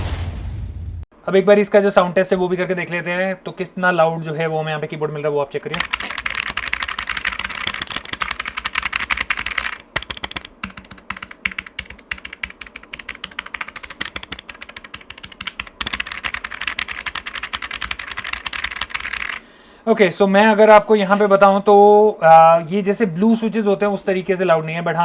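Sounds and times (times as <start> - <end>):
mechanical keyboard typing: 5.6 - 19.4.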